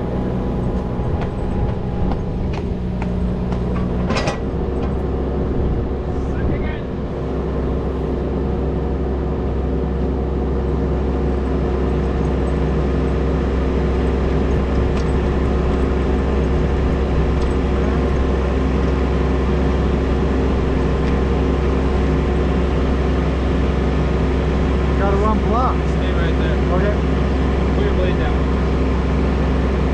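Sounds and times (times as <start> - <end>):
diesel engine running: 0.0 - 29.9.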